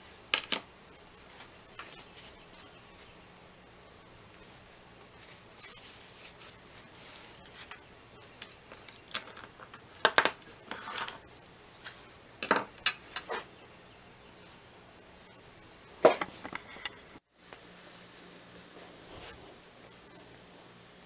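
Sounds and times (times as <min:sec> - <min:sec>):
small hard objects clicking: 0:08.4 - 0:11.2.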